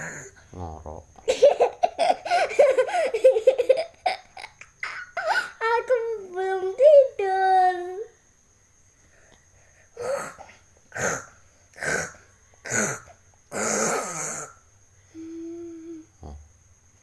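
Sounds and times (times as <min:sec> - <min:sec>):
child humming: 0:00.0 - 0:01.0, 0:10.0 - 0:16.4
child fake snoring: 0:00.0 - 0:01.1, 0:10.0 - 0:14.6, 0:15.2 - 0:16.5.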